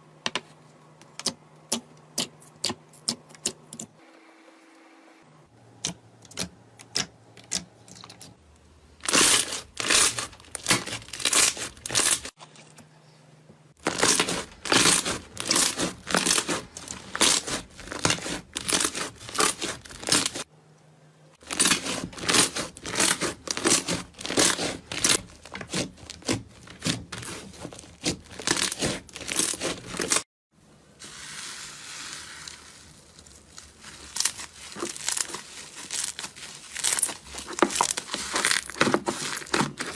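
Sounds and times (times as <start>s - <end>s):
soft hiss: 30.7s - 34.0s.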